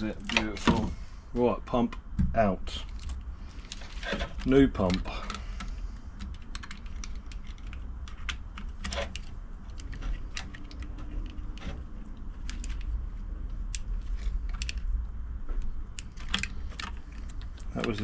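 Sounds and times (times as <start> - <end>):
low steady rumble: 0.0 - 18.0
plastic and metal parts clicking: 2.8 - 12.9, 13.5 - 14.9, 15.9 - 18.0.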